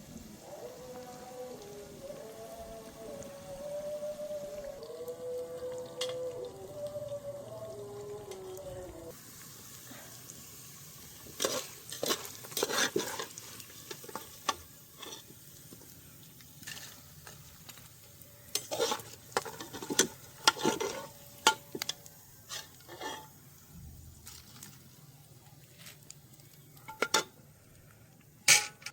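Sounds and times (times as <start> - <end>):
faint sizzle: 0.0 - 28.9
metal spoon scraping cookware: 18.5 - 21.6, 22.5 - 23.3.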